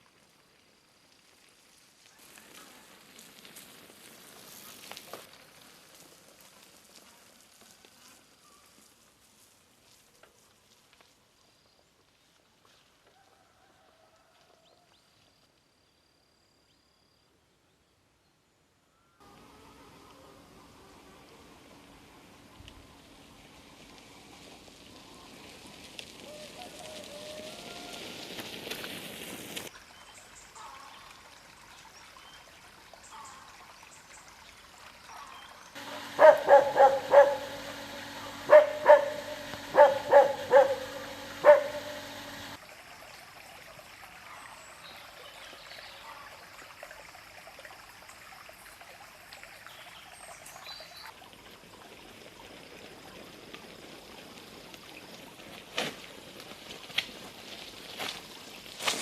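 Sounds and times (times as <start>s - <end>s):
faint outdoor background noise: 0.0s - 59.0s
dog barking: 35.8s - 42.6s.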